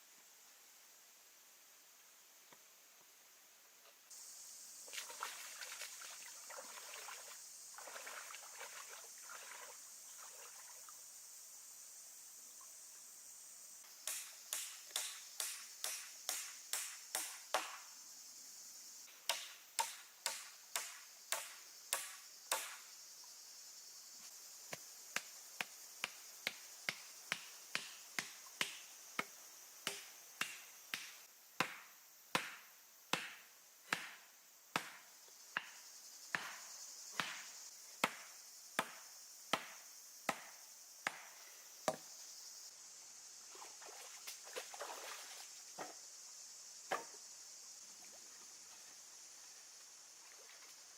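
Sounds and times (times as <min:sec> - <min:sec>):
steady high hiss: 0:00.0 - 0:50.9.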